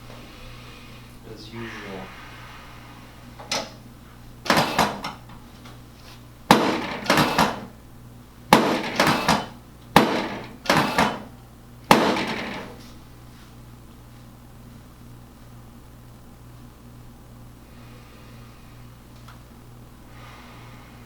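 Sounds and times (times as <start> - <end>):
sharp knocking clacks: 8.6 - 11.3.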